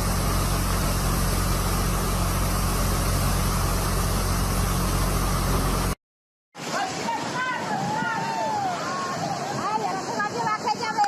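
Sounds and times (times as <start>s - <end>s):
floodwater rushing: 0.0s - 6.0s, 6.6s - 11.0s.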